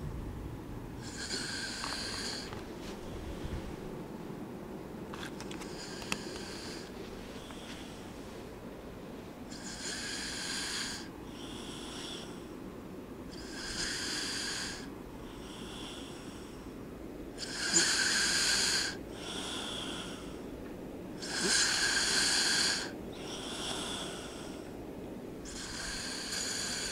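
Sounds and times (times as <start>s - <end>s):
person snoring: 1.0s - 2.6s, 5.6s - 7.7s, 9.5s - 12.4s, 13.3s - 16.6s, 17.4s - 20.4s, 21.2s - 24.7s, 25.4s - 26.9s.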